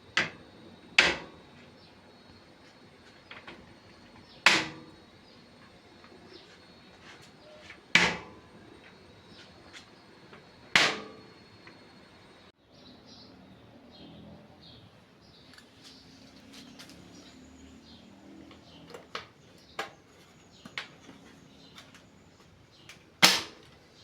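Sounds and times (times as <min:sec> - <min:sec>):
sharp knocks of hard objects: 0:04.5 - 0:04.9, 0:08.0 - 0:08.3, 0:10.8 - 0:11.2.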